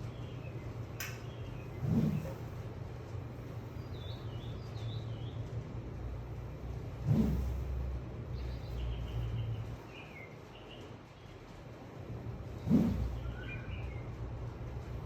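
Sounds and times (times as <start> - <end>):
small birds chirping: 0.0 - 11.6, 12.4 - 14.4
steady low rumble: 0.0 - 15.0
brief whooshes: 7.0 - 7.8, 12.6 - 13.3.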